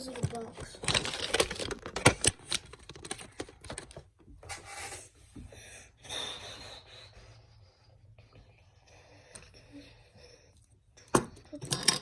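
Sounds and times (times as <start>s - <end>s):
plastic toy bricks clicking: 0.3s - 4.0s, 11.2s - 12.0s.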